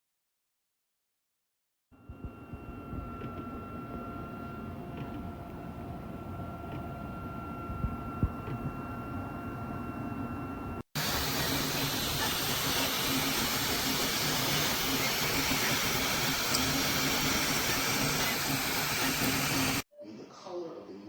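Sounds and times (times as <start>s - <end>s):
quiet hum with whine: 2.0s - 10.8s
low pulsing hum: 2.0s - 19.8s
cooling fans whooshing hiss: 11.0s - 19.8s.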